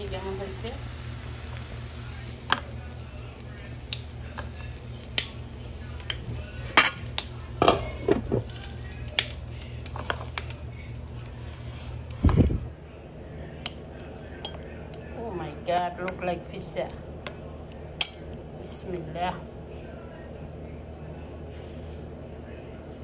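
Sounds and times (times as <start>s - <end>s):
steady low hum: 0.0s - 23.0s
utensils clicking on dishes: 6.0s - 10.6s.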